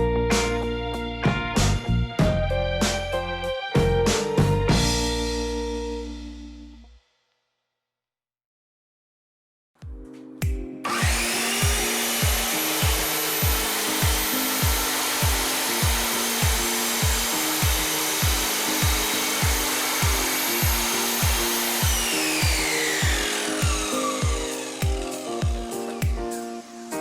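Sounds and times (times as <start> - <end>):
music with kick-drum beat: 0.0 - 3.2, 3.8 - 6.3, 9.8 - 26.4
mitre saw whining and cutting: 10.8 - 27.0.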